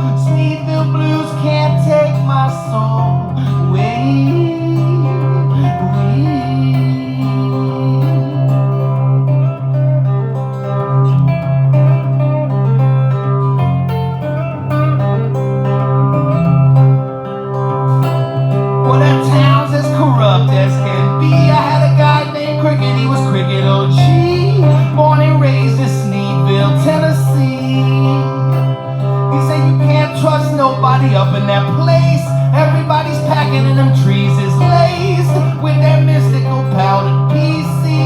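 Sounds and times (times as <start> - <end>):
steady bass: 0.0 - 10.2, 18.0 - 38.0
acoustic guitar: 0.0 - 38.0
lead guitar with bending notes: 0.0 - 38.0.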